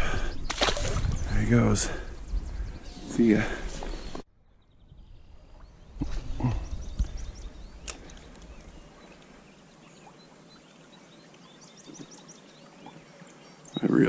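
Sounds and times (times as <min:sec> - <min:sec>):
low rumbling on microphone: 0:00.0 - 0:09.1
small birds chirping: 0:00.0 - 0:14.0.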